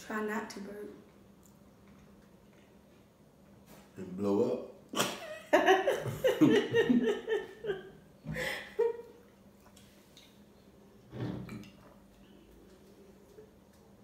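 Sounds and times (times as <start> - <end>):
person laughing: 5.0 - 9.1.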